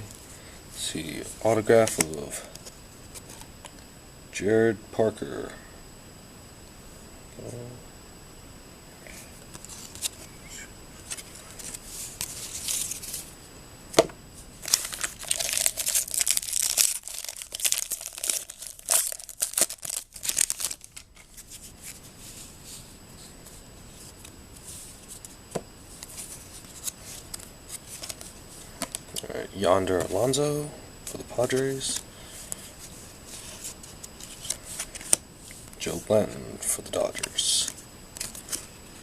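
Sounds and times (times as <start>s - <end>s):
foil wrapper tearing and crinkling: 14.6s - 21.4s.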